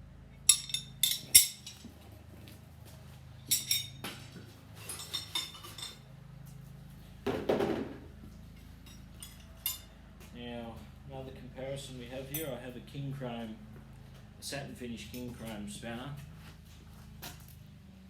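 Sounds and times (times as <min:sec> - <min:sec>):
metal spanners clinking: 0:00.5 - 0:01.9, 0:03.4 - 0:04.1, 0:04.8 - 0:06.0, 0:08.8 - 0:09.9.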